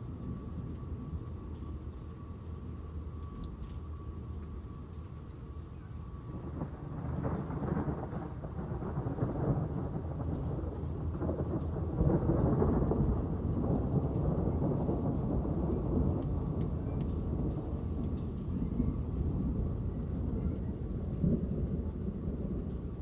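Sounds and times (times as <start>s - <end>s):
steady rain falling: 0.0s - 23.0s
rolling thunder: 6.2s - 23.0s.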